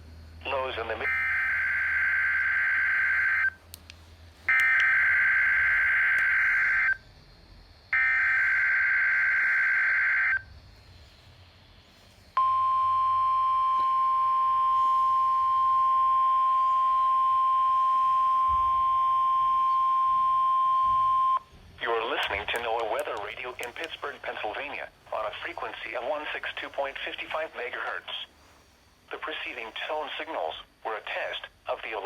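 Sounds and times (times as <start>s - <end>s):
screechy digital data tones: 4.5s - 7.0s, 8.0s - 10.5s.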